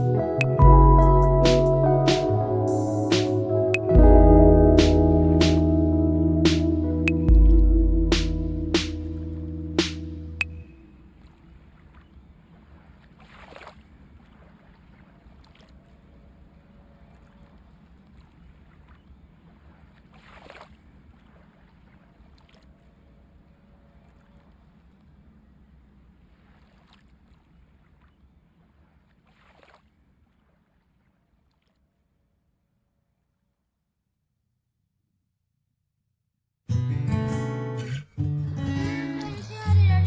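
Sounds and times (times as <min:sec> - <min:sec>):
steady low rumble: 0:00.0 - 0:10.5.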